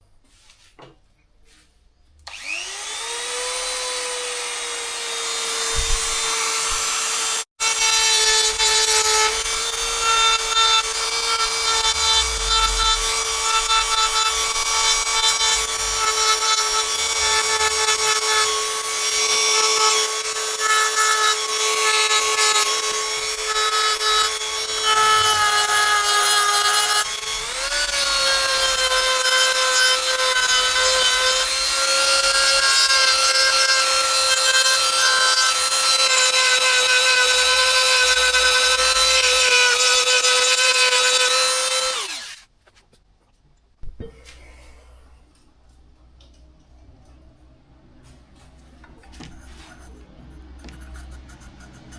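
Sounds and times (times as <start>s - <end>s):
rotary tool whine: 2.2s - 28.4s, 34.7s - 42.4s
bit grinding into wood: 4.5s - 42.4s.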